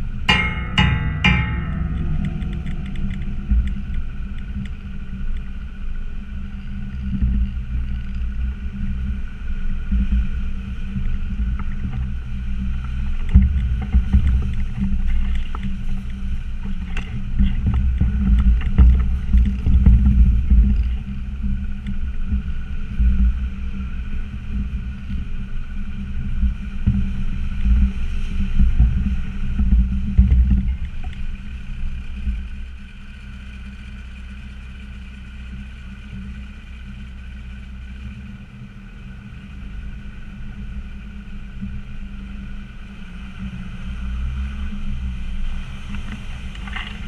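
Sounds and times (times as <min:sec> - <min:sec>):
body and suspension rattles: 0:00.0 - 0:24.0
diesel engine running: 0:29.3 - 0:47.0.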